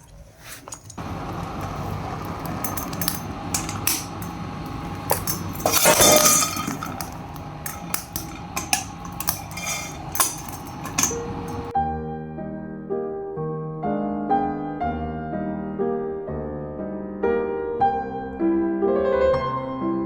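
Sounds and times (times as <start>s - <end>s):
metal utensils scraping a pan: 0.0s - 11.7s
steady hiss: 0.0s - 11.7s.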